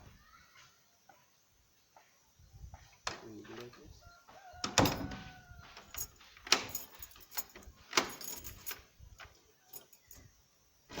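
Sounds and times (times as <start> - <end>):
lock clicking and rattling: 4.6 - 10.3.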